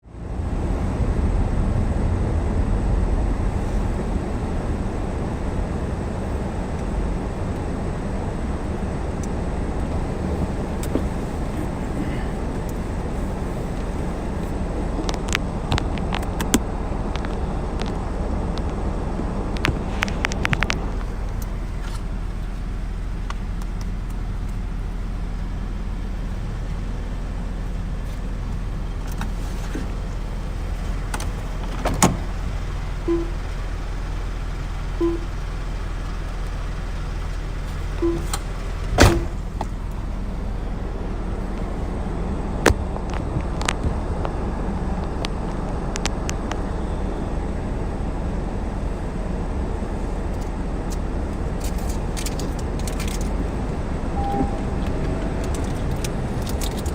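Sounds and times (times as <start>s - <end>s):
car wash rumble: 0.0s - 56.9s
short low beeps: 33.0s - 33.4s, 35.0s - 35.4s, 38.0s - 38.4s, 54.1s - 54.8s.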